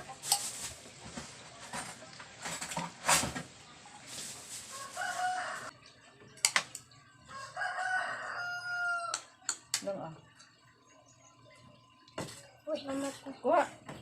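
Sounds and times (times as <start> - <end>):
kitchenware clattering: 0.0 - 3.6
rooster crowing: 4.7 - 5.8, 7.3 - 9.3.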